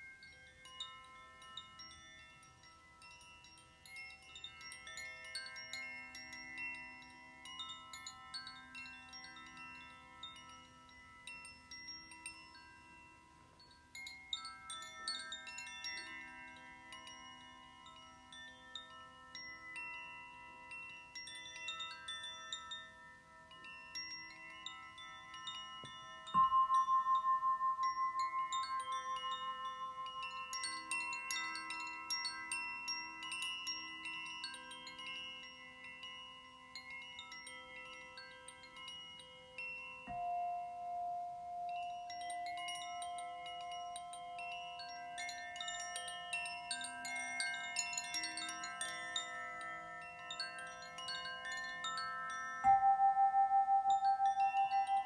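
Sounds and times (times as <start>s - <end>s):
light tinkling chimes: 0.0s - 55.0s
singing bowls ringing: 0.0s - 55.0s
crystal harp: 23.6s - 55.0s.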